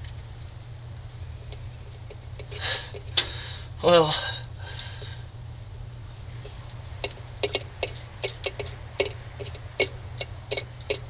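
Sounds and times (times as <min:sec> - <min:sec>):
steady low hum: 0:00.0 - 0:11.0
sharp uneven clicking: 0:06.4 - 0:11.0.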